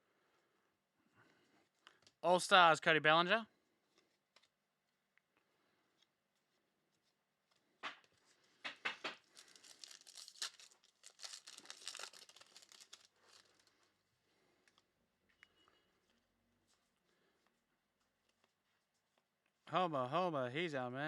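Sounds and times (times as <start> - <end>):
foil wrapper crinkling: 9.0 - 13.9
foil wrapper tearing: 9.2 - 13.7.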